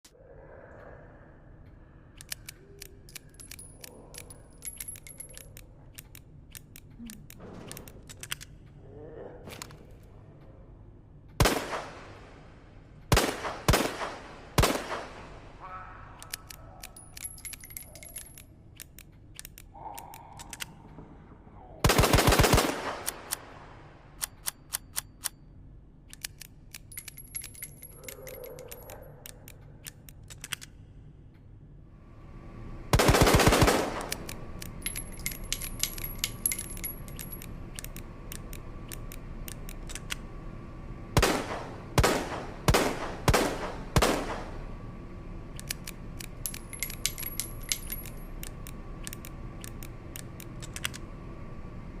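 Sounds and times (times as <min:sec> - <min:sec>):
revolver metallic clicks: 0:02.0 - 0:08.8, 0:16.2 - 0:20.8, 0:24.2 - 0:31.5, 0:33.0 - 0:40.4, 0:45.5 - 0:51.2
revolver gunshots ringing out: 0:11.4 - 0:12.3, 0:13.1 - 0:15.5, 0:32.9 - 0:34.3, 0:41.2 - 0:44.6.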